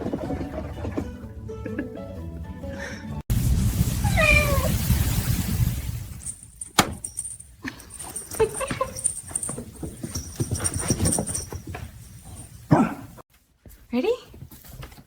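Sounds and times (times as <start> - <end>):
cat meowing: 4.0 - 4.8.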